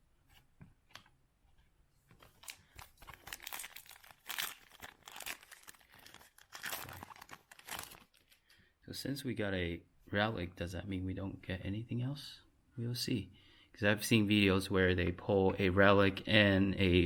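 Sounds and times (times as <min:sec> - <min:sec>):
foil wrapper tearing and crinkling: 0:02.3 - 0:08.4.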